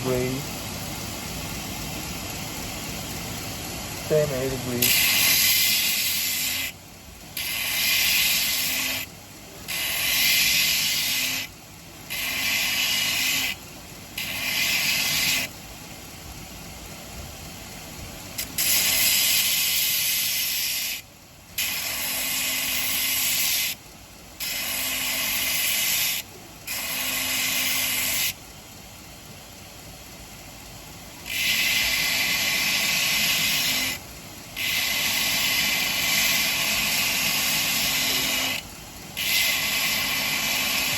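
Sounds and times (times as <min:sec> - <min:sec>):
belt grinder sharpening blade: 0:04.8 - 0:06.8, 0:07.4 - 0:09.1, 0:09.7 - 0:11.5, 0:12.1 - 0:13.6, 0:14.2 - 0:15.5, 0:18.4 - 0:21.0, 0:21.6 - 0:23.8, 0:24.4 - 0:28.4, 0:31.2 - 0:34.0, 0:34.6 - 0:38.6, 0:39.2 - 0:40.9.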